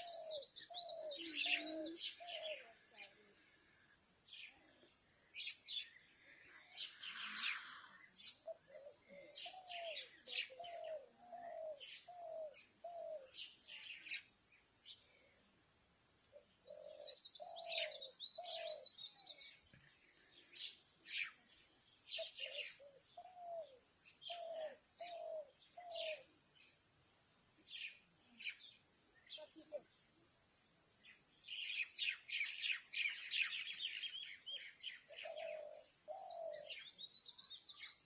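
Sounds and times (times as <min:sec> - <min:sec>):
dove cooing: 0:00.0 - 0:03.2, 0:07.0 - 0:13.4, 0:16.6 - 0:19.5, 0:22.2 - 0:26.3, 0:33.1 - 0:36.9
sparrows chirping: 0:00.0 - 0:15.4, 0:16.4 - 0:26.9, 0:27.6 - 0:30.1, 0:31.0 - 0:38.0.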